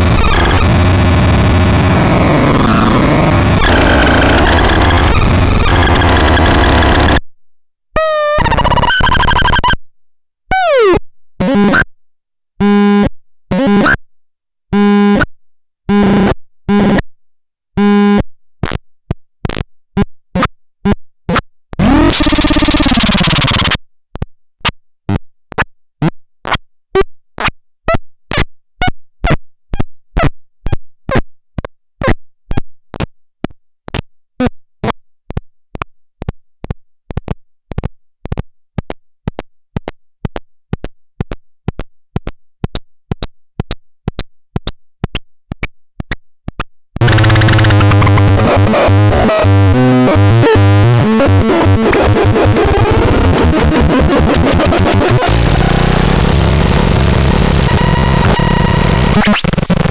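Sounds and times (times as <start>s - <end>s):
dense electronic drone: 0.0s - 6.0s, 47.0s - 59.9s
strong low hum: 47.0s - 51.4s.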